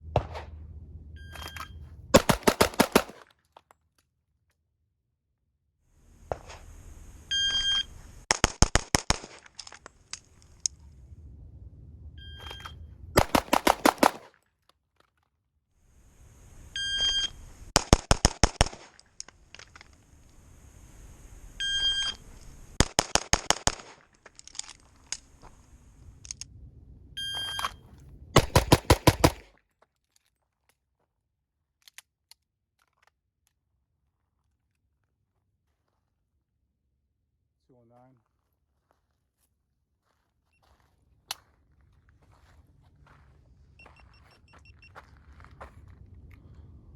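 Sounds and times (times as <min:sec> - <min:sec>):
shot timer beep: 0:01.2 - 0:01.7, 0:27.2 - 0:27.8
pistol shots: 0:02.2 - 0:03.2, 0:13.2 - 0:14.3, 0:28.4 - 0:29.5.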